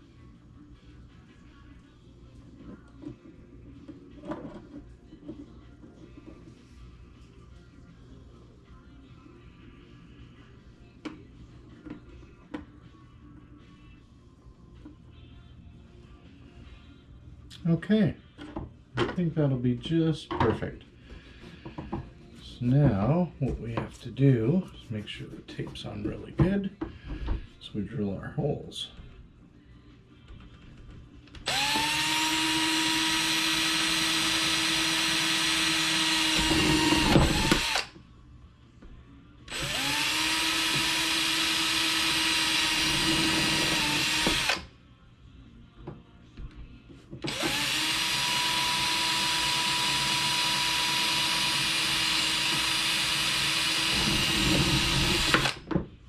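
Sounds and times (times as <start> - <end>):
power drill drilling plastic: 31.5 - 37.9, 39.5 - 44.6, 47.3 - 55.6.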